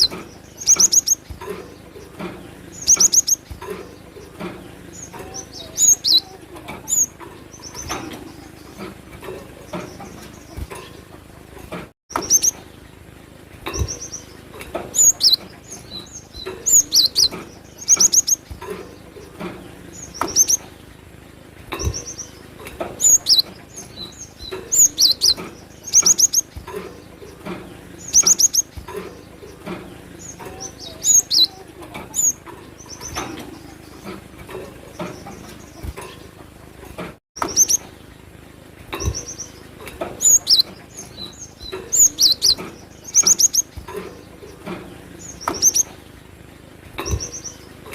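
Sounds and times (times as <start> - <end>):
bird singing high chirps: 0.0 - 8.9, 12.1 - 12.6, 13.7 - 18.6, 19.9 - 20.7, 21.8 - 27.4, 28.0 - 34.2, 37.4 - 37.9, 39.0 - 43.9, 45.2 - 45.9.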